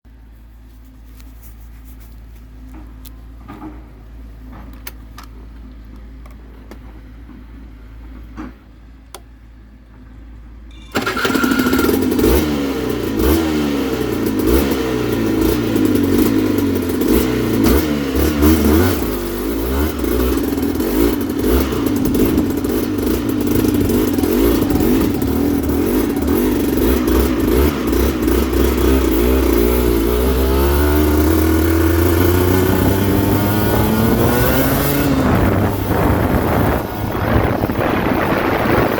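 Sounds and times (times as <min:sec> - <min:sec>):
motorcycle engine revving: 0:10.8 - 0:38.9.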